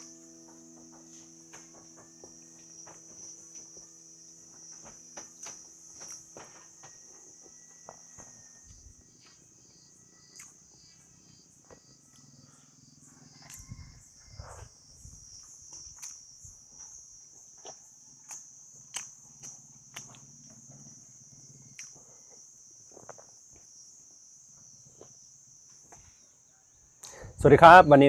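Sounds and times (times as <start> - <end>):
low musical chord: 0.0 - 7.4
crickets chirring: 0.0 - 28.0.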